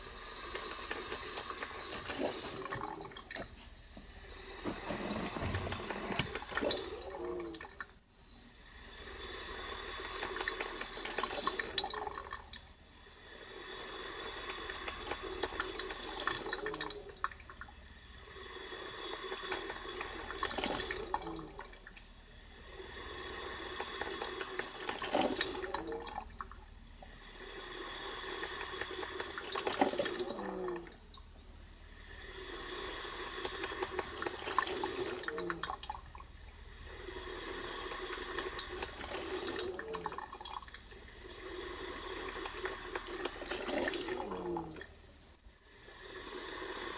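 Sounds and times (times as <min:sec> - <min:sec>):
coffee maker gurgling and hissing: 0:00.0 - 0:46.9.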